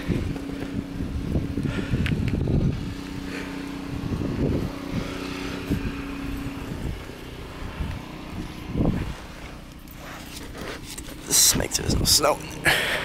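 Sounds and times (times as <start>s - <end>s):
low machine hum: 0.0s - 13.0s
footsteps crunching through snow: 4.6s - 12.6s.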